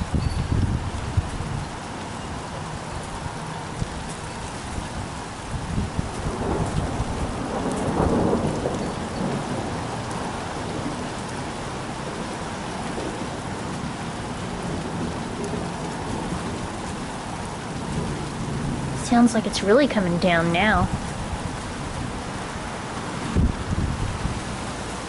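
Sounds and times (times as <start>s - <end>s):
steady rain: 0.0s - 25.0s
thunder rolling: 5.5s - 11.1s, 11.9s - 24.6s.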